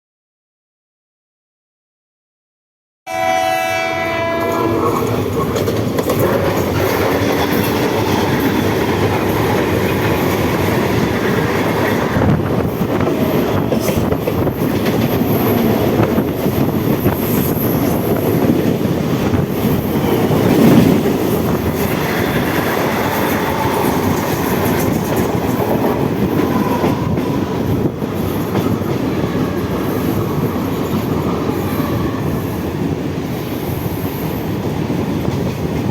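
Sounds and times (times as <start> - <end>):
train horn: 3.1 - 5.1
train rumble: 3.3 - 35.9
train wheels clacking over rail joints: 4.8 - 33.4.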